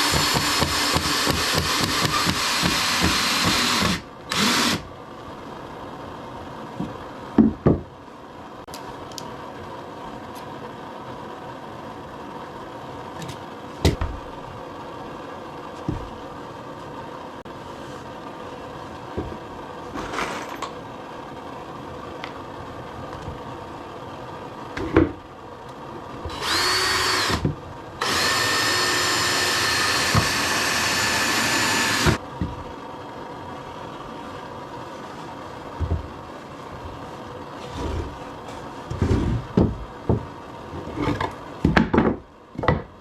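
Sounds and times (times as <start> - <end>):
power drill running: 0.0 - 4.9, 26.3 - 27.4, 28.0 - 32.2.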